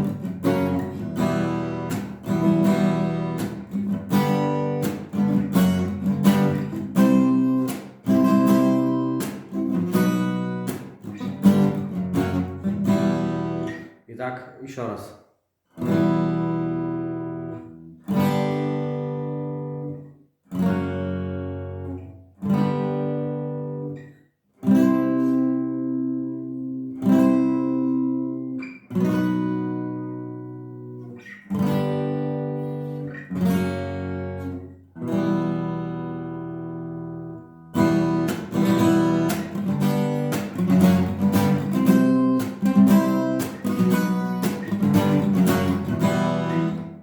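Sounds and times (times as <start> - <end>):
acoustic guitar strumming: 0.0 - 14.0, 15.8 - 47.0.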